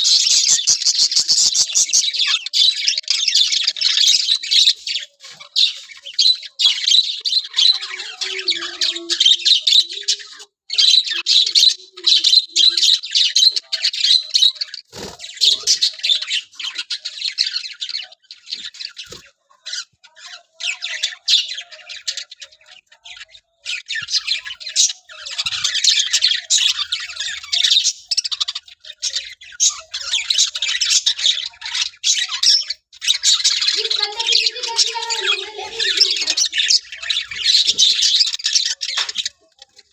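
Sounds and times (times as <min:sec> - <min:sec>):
parrots chattering and squawking: 0:00.0 - 0:39.9.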